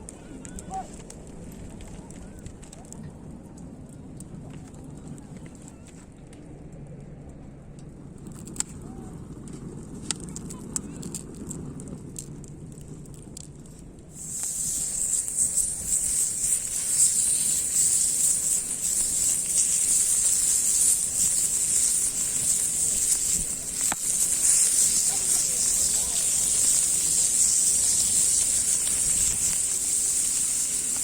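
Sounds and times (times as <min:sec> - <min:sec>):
light crackling and ticking: 0:00.0 - 0:31.0
meat sizzling on griddle: 0:14.2 - 0:31.0.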